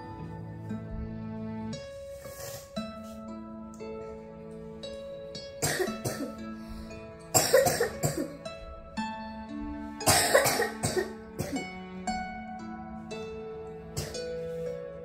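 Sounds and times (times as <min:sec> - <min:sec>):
plucked-string background music: 0:00.0 - 0:15.0
person coughing: 0:05.6 - 0:06.4, 0:07.3 - 0:08.4, 0:10.1 - 0:11.6.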